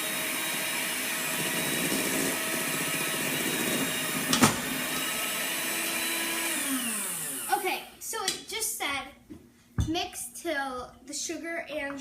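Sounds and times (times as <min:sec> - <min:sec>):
electric mixer running: 0:00.0 - 0:07.9.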